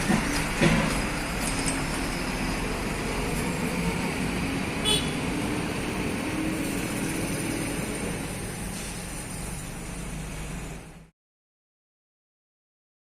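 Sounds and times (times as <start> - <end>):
heavy truck engine running: 0.0 - 11.1
road traffic noise: 0.0 - 11.1.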